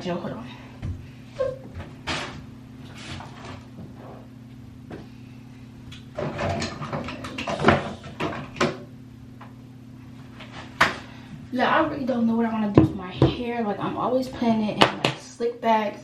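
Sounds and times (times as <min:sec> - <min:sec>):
items knocking and rustling: 0:06.1 - 0:08.9.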